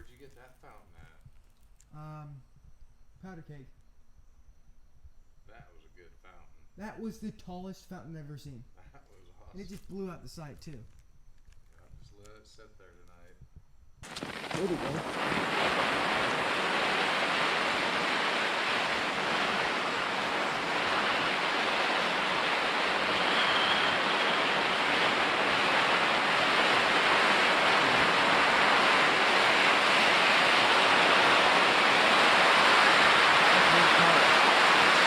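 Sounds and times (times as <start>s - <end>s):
firework fountain hissing: 14.0s - 35.0s.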